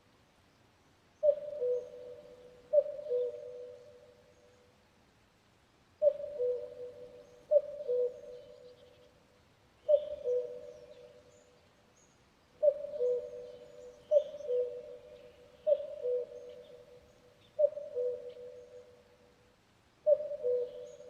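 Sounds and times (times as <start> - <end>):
cuckoo calling: 1.2 - 4.1, 6.0 - 8.8, 9.8 - 11.2, 12.6 - 19.0, 20.0 - 21.0.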